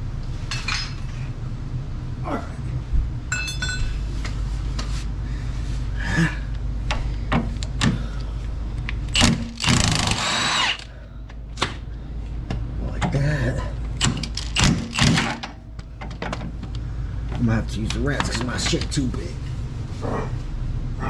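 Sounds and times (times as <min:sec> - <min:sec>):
metal tools knocking and clinking: 0:00.5 - 0:01.2, 0:03.3 - 0:04.1
power tool burst: 0:09.2 - 0:10.9.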